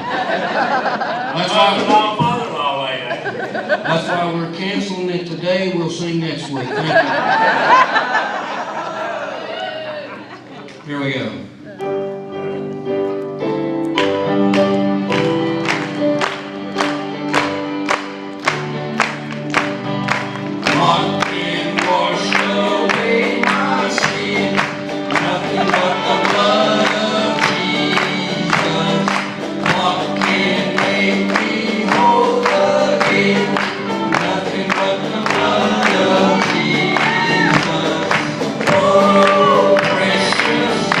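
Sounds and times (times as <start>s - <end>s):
accompaniment with steady beat: 13.5s - 41.0s
men singing gospel song: 20.6s - 41.0s.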